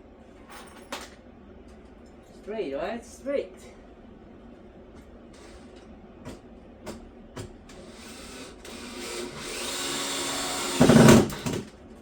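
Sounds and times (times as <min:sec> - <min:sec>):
power drill motor running: 0:07.8 - 0:11.6.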